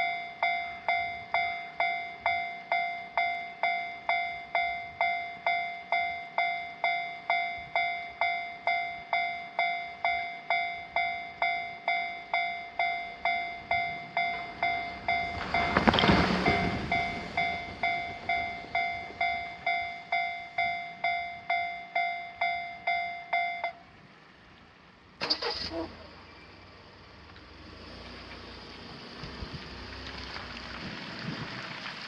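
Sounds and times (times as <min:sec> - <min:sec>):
level crossing warning bell: 0:00.0 - 0:24.1
train passing: 0:00.0 - 0:32.0.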